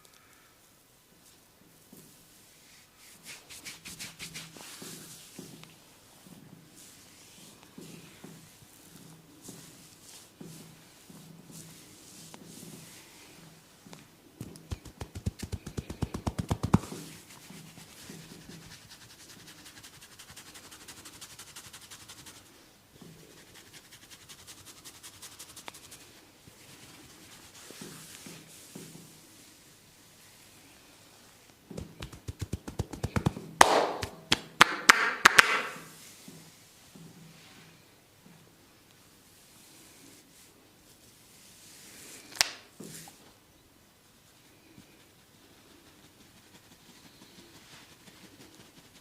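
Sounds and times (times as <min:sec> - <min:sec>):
scratching of hair and scalp: 0:02.0 - 0:34.2, 0:44.1 - 0:49.0
fast taps of hands on head: 0:14.4 - 0:17.2, 0:31.7 - 0:35.8.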